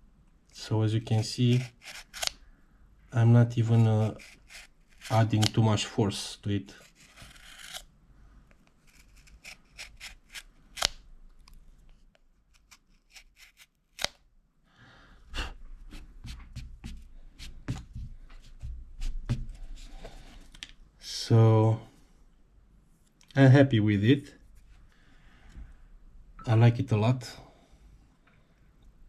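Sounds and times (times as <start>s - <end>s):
knife cutting and scraping clicks: 1.5s - 2.4s, 4.0s - 5.6s, 6.8s - 7.9s, 8.6s - 11.6s, 12.5s - 14.2s.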